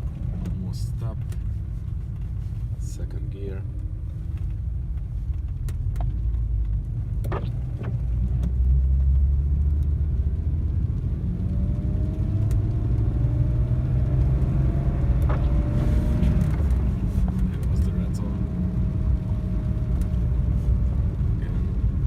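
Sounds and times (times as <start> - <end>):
car engine accelerating: 4.3 - 22.0.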